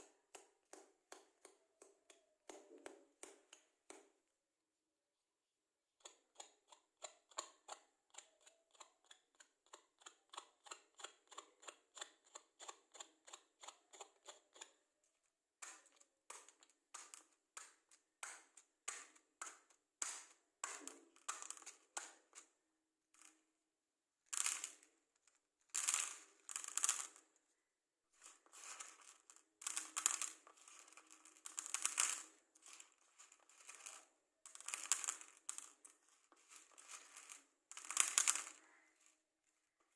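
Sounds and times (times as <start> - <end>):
scratchy rustles: 34.6 - 39.2.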